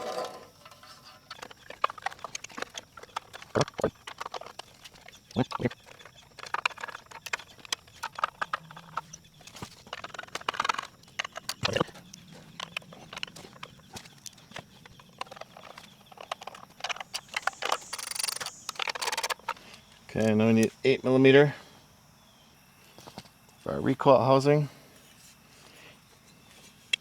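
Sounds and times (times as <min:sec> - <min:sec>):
ratchet wrench clicking: 0:15.6 - 0:19.5.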